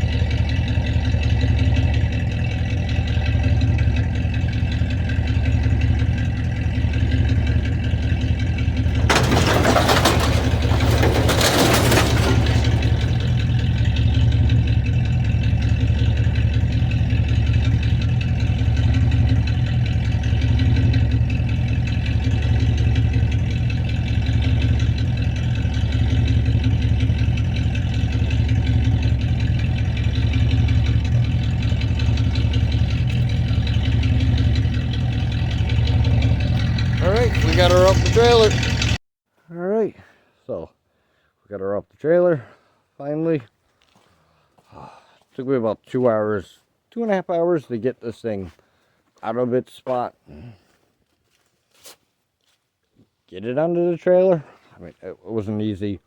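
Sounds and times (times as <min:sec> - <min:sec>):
vehicle engine idling: 0:00.0 - 0:39.0.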